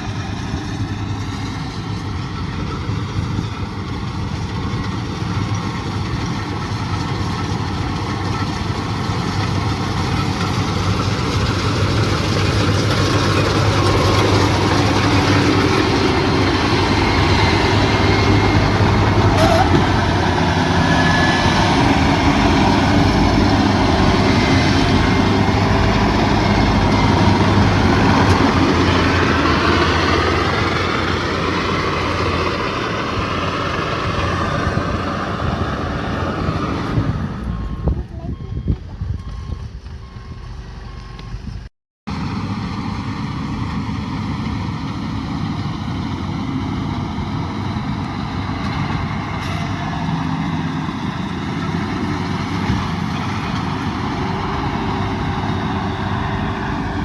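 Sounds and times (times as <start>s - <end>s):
combine harvester running: 0.0s - 57.0s.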